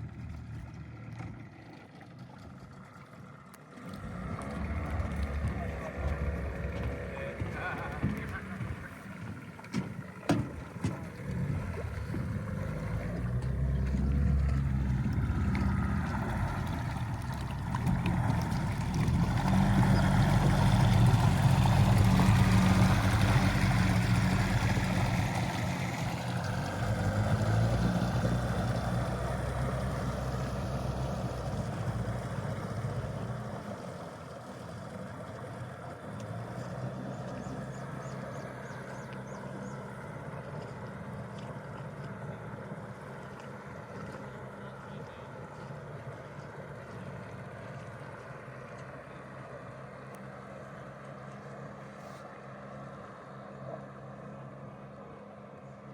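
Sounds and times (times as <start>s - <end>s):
outboard motor running: 0.0s - 55.9s
sharp knocks: 6.8s - 11.2s.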